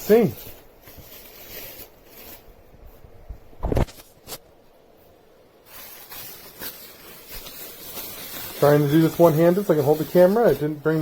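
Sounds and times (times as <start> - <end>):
packing material rustling: 0.0 - 11.0.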